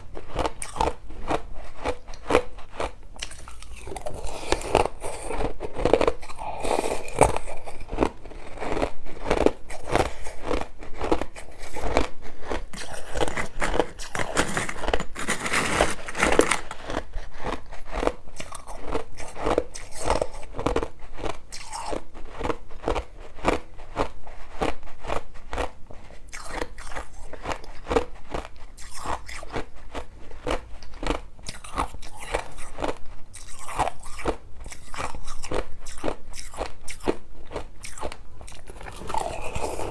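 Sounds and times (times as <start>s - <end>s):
person crunching ice: 0.1s - 39.9s.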